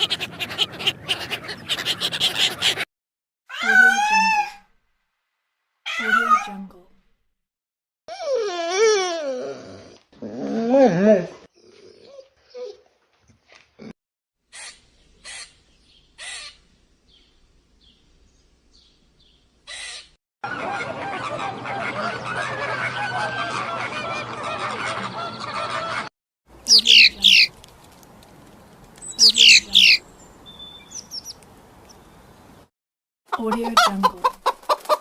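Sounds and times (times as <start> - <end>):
clamour of many bird calls: 0.0 - 2.8, 18.8 - 26.1, 26.7 - 27.6, 29.0 - 32.6.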